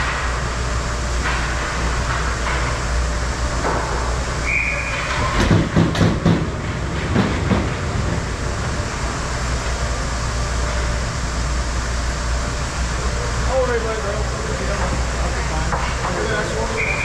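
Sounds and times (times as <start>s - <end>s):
short high whistle: 4.4s - 5.1s, 16.8s - 17.0s
steady low rumble: 5.3s - 16.8s.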